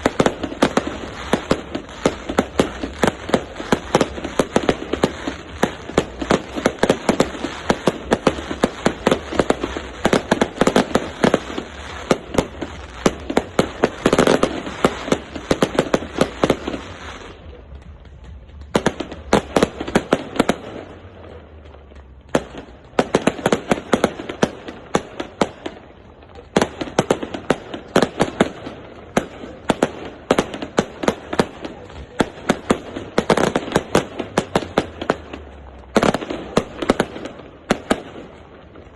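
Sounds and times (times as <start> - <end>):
fireworks bangs and crackling: 0.0 - 38.9.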